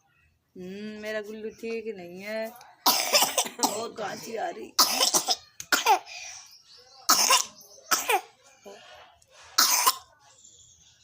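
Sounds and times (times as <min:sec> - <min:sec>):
person coughing: 0:02.9 - 0:03.9, 0:04.8 - 0:06.1.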